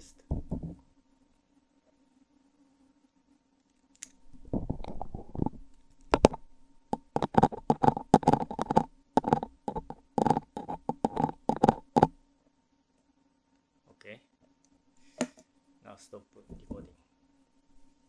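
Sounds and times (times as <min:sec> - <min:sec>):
microphone handling taps and rubs: 0:00.2 - 0:00.8, 0:04.4 - 0:12.2, 0:16.5 - 0:16.9
sharp knocks on microphone: 0:00.3 - 0:00.8, 0:07.0 - 0:12.2, 0:16.5 - 0:16.9.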